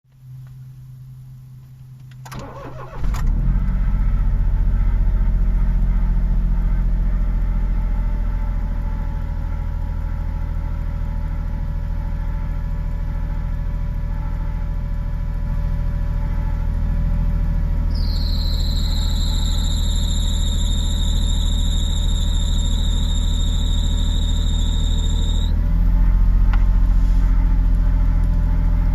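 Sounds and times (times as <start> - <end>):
car engine cranking and idling: 1.7 - 18.6, 19.4 - 28.9
high-pitched squealing whistle: 17.9 - 25.6.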